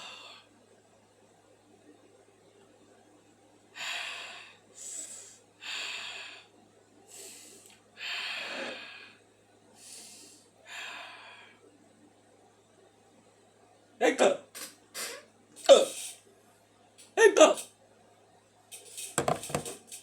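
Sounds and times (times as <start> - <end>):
man breathing heavily: 3.8 - 6.5, 7.1 - 9.2, 9.8 - 11.6.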